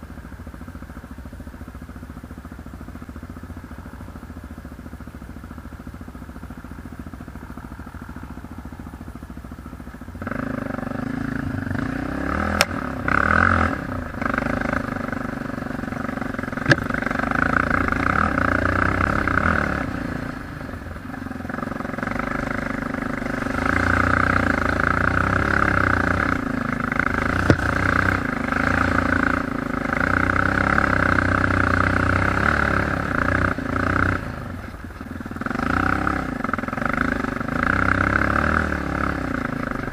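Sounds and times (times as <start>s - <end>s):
quad engine revving: 10.1s - 39.9s
sharp knocks: 16.6s - 16.9s.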